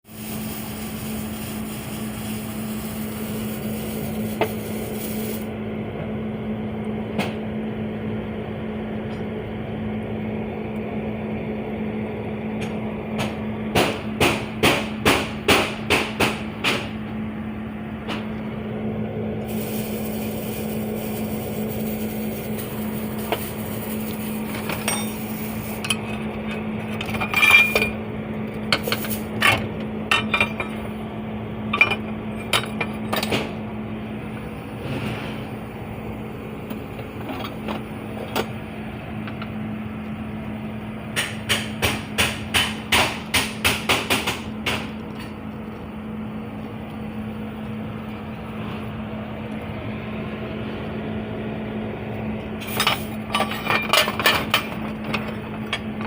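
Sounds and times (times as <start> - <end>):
steady machine hum: 0.1 - 56.0.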